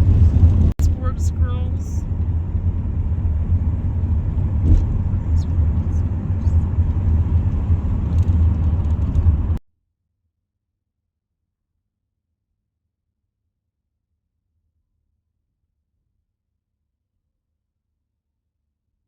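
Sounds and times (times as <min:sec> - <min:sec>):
car interior rumble while driving: 0:00.0 - 0:09.6.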